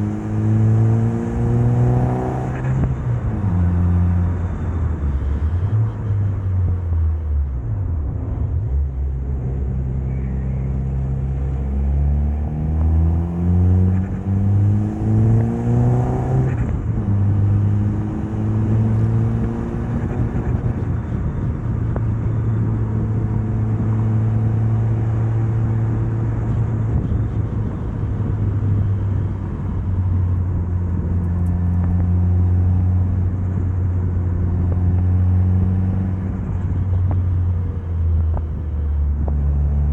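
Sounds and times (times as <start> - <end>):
car engine revving: 0.0 - 4.5, 9.2 - 21.9.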